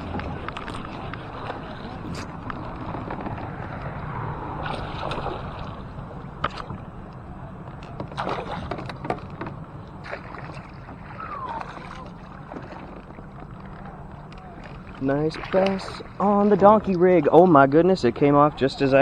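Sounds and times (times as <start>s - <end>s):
clicks and knocks on boat: 0.0s - 4.2s, 5.0s - 17.4s
wind noise: 0.0s - 9.8s
water washing: 0.0s - 18.8s.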